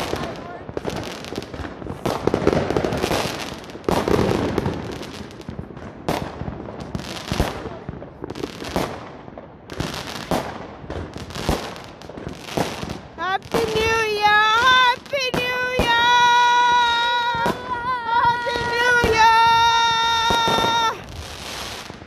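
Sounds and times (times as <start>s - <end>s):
fireworks bangs and crackle: 0.0s - 22.0s.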